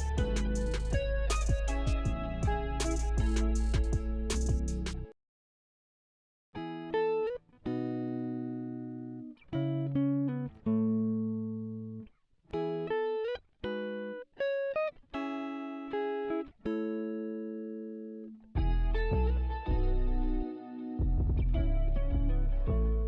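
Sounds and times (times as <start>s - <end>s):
plucked guitar melody: 0.0s - 5.1s, 6.6s - 23.0s.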